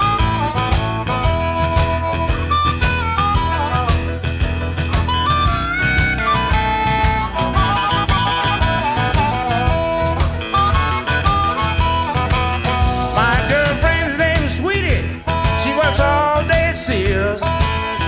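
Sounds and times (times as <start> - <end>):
bass and drum kit: 0.0 - 18.0
electric guitar lead with bent notes: 0.0 - 18.0.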